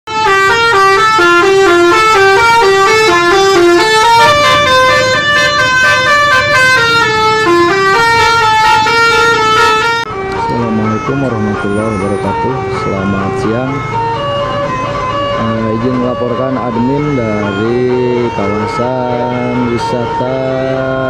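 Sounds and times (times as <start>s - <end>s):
musical air horns playing melody: 0.1s - 15.6s.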